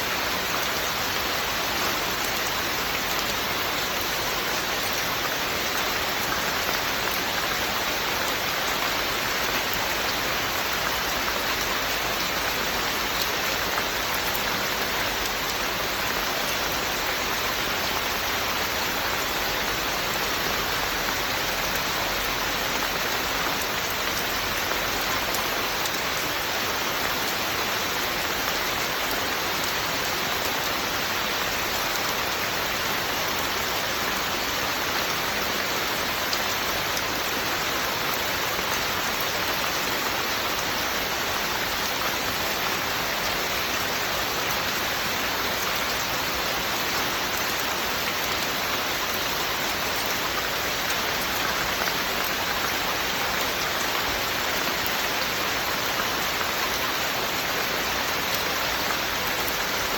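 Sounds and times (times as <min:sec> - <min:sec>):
steady rain falling: 0:00.0 - 0:59.9.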